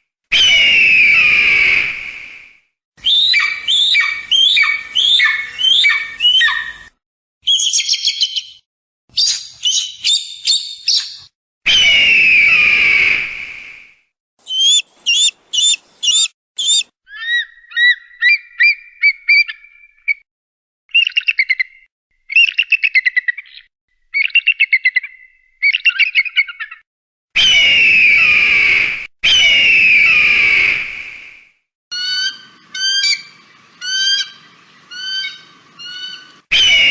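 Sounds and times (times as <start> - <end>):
eagle loud screams: 0.3 - 2.0, 11.7 - 13.3, 14.4 - 16.9, 27.4 - 30.8, 32.0 - 36.9
eagle whistled calls: 3.0 - 8.6, 9.2 - 13.2, 14.4 - 20.2, 32.0 - 36.9
eagle rapid chattering calls: 14.4 - 16.9.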